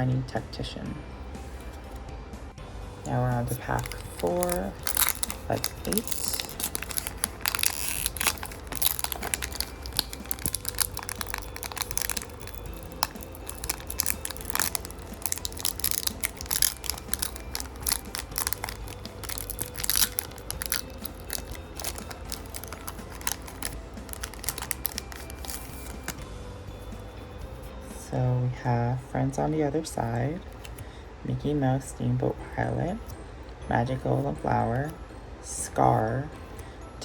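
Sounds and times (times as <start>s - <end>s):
plastic wrapper crinkling and tearing: 3.2s - 26.2s
cards crackling as handled: 3.3s - 27.7s, 30.4s - 30.8s.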